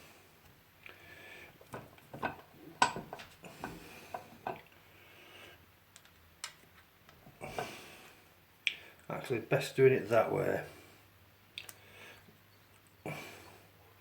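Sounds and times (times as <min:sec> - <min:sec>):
light metallic knocks and clicks: 0:01.7 - 0:04.7.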